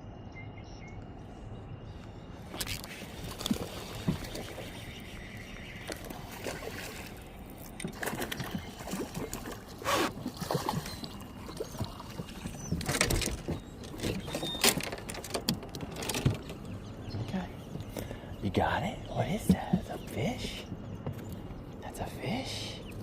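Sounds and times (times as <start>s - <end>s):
gear knocking and rustling: 10.7s - 18.1s.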